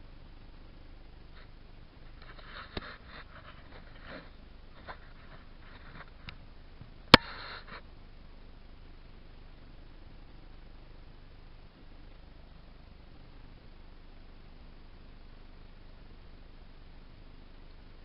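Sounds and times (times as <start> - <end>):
short sniffs: 7.2 - 7.8.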